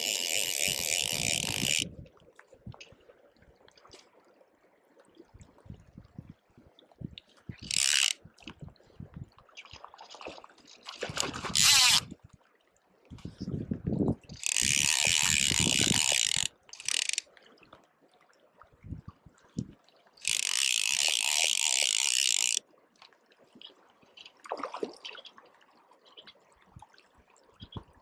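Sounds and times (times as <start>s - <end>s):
fishing reel ratchet buzzing: 0.0s - 1.9s, 7.6s - 8.2s, 11.2s - 12.1s, 14.4s - 17.2s, 20.2s - 22.6s.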